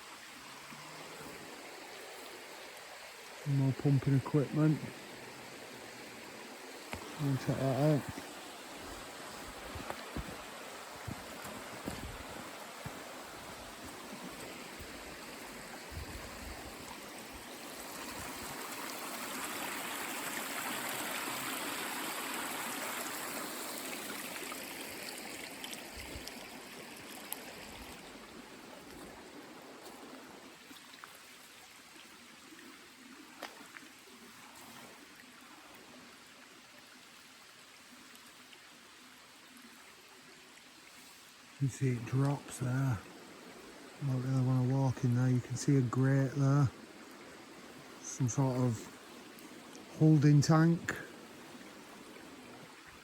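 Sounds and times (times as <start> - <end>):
stream water rushing: 0.0 - 53.0.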